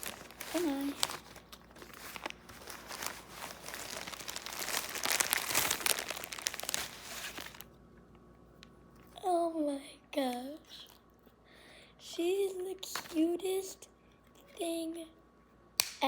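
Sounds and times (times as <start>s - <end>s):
packaging crinkling and tearing: 0.0s - 7.7s.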